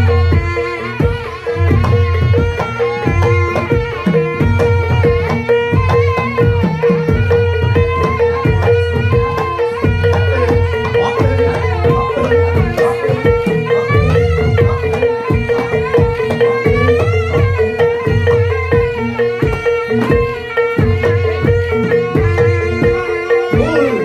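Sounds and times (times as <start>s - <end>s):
fast hand drum strokes: 0.0s - 24.0s
wavering melody: 0.0s - 24.0s.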